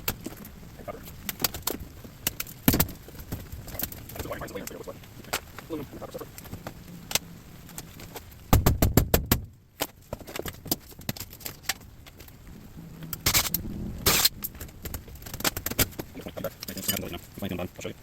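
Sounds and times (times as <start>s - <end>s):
metal parts clattering and knocking: 16.6s - 17.2s.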